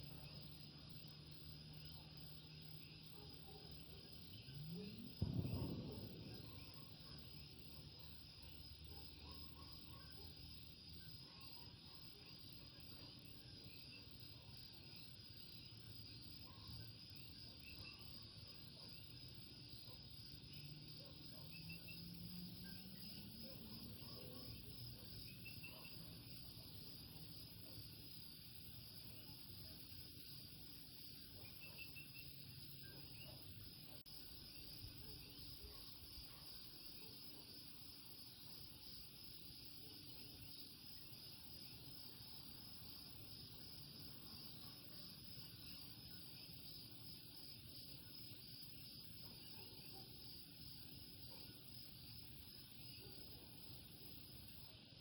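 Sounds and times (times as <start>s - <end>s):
frogs and insects trilling: 19.7s - 54.8s.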